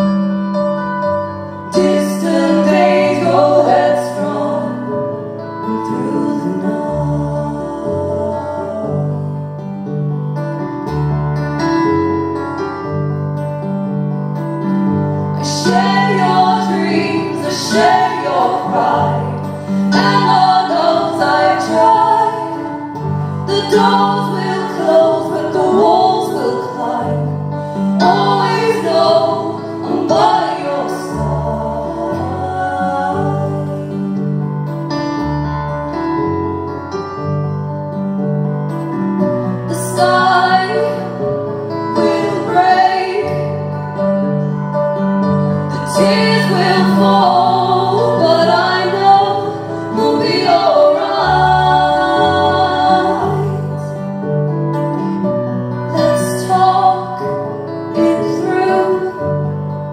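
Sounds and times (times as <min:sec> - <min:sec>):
instrumental chord progression: 0:00.0 - 0:59.9
women singing wordless lines: 0:01.7 - 0:05.0, 0:05.8 - 0:09.2, 0:15.4 - 0:34.1, 0:39.7 - 0:41.2, 0:45.9 - 0:53.9, 0:57.9 - 0:59.2.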